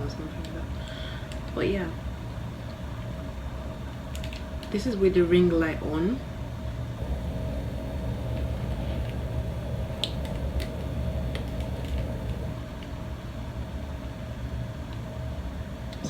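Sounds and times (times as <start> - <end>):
low room hum: 6.9 - 12.8.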